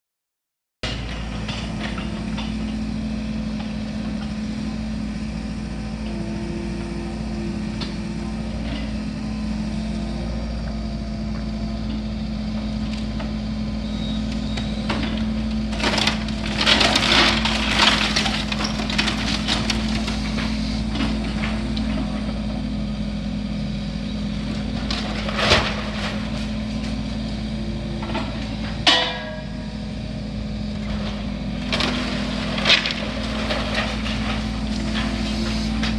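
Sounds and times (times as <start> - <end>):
diesel engine running: 0.8 - 35.9
wood cracking and crunching: 14.9 - 22.2, 24.5 - 27.2, 30.8 - 35.9.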